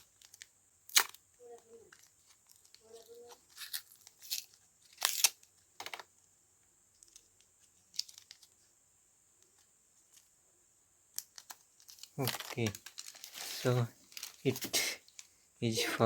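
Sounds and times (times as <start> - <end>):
packaging rustling and tearing: 1.9 - 6.0, 11.3 - 14.8
faint hiss: 6.2 - 16.0.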